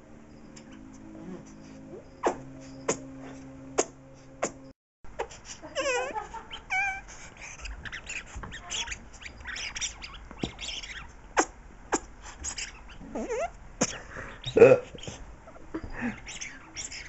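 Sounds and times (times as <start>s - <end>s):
rubber toy squealing: 5.2s - 13.6s, 16.0s - 17.0s.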